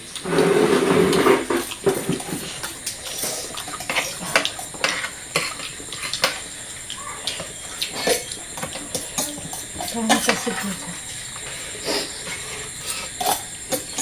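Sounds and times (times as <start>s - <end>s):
spoons clinking on plates: 7.3s - 10.8s.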